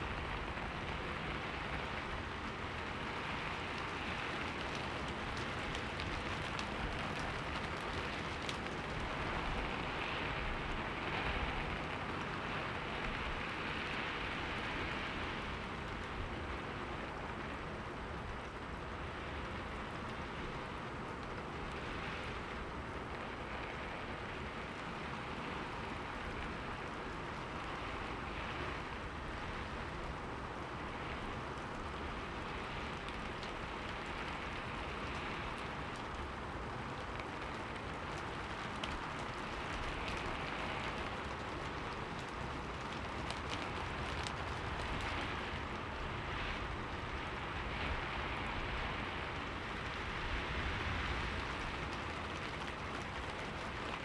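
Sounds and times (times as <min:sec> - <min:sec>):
rain hitting a window: 0:00.0 - 0:54.0.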